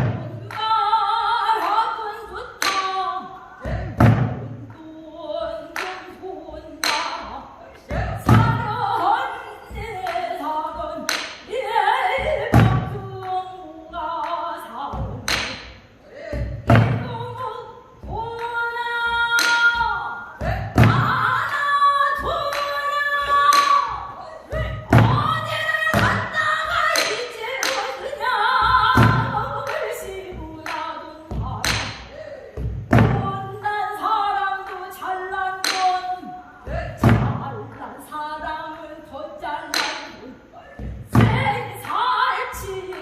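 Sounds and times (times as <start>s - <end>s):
barrel drum strikes on head and rim: 3.9s - 4.5s, 32.6s - 33.4s, 37.0s - 37.4s.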